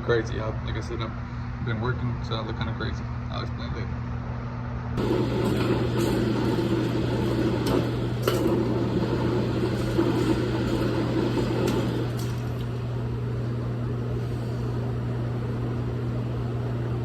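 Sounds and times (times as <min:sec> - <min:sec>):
low mechanical hum: 0:00.0 - 0:17.0.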